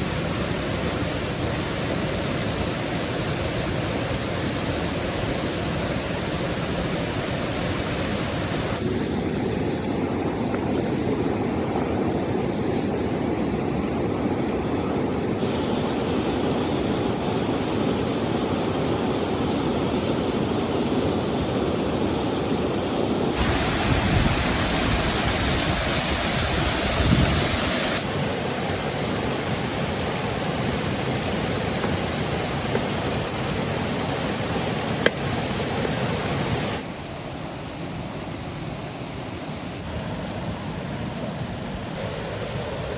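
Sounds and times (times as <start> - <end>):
river rushing: 0.0 - 42.9
falling rain: 23.4 - 29.3.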